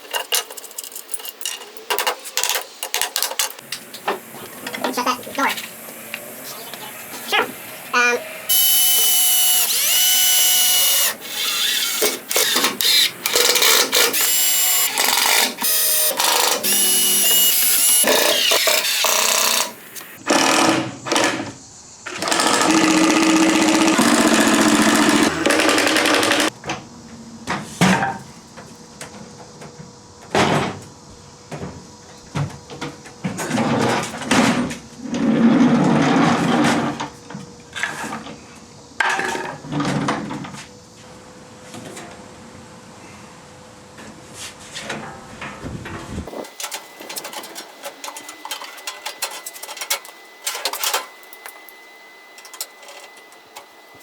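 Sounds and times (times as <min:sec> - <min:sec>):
power drill running: 0:04.0 - 0:20.7, 0:22.2 - 0:26.5.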